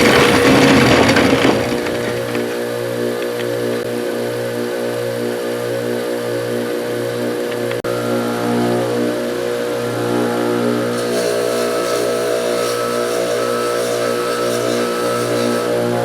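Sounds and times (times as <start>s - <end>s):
bench grinder motor humming: 7.9s - 16.0s
metal grinding hiss: 10.9s - 16.0s.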